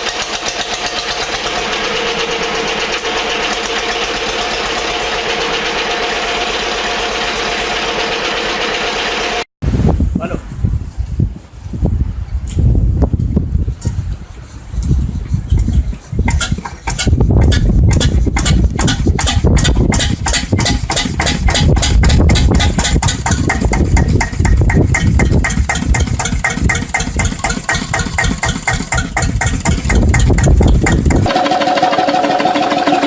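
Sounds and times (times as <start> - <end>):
diesel engine starting and running: 0.0 - 9.5, 16.3 - 33.0
higher-pitched engine: 0.0 - 9.5, 18.4 - 33.0.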